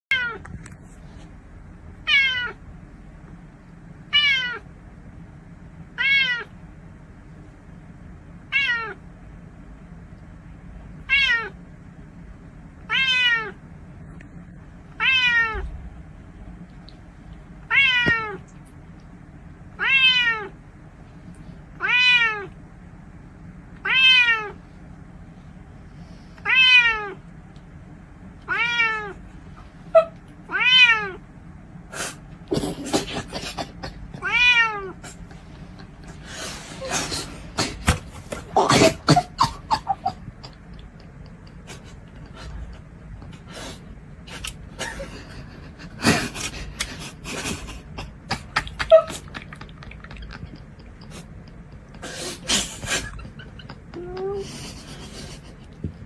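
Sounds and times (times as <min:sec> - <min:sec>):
cat meowing: 0:02.1 - 0:02.6, 0:04.1 - 0:04.6, 0:06.0 - 0:06.5, 0:08.5 - 0:09.0, 0:11.1 - 0:11.6, 0:12.9 - 0:13.6, 0:15.0 - 0:15.7, 0:17.7 - 0:18.4, 0:19.8 - 0:20.5, 0:21.8 - 0:22.6, 0:23.8 - 0:24.6, 0:26.4 - 0:27.2, 0:28.5 - 0:29.2, 0:30.0 - 0:31.2, 0:34.2 - 0:35.0.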